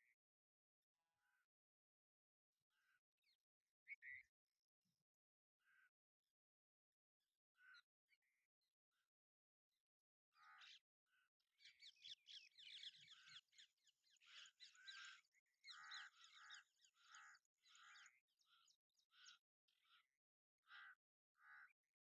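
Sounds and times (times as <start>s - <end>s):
babbler birds calling: 11.6s - 21.8s.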